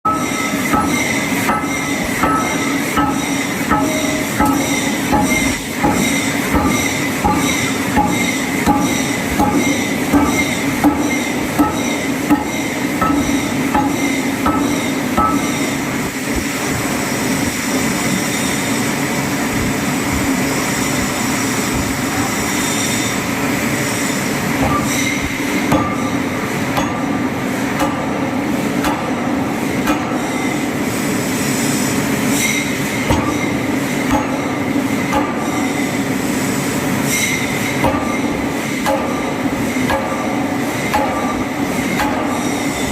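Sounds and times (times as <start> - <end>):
forging hammer metallic blows: 0.1 - 16.4, 24.6 - 30.6, 32.4 - 36.2, 37.0 - 42.9
loud machinery noise: 0.1 - 42.9.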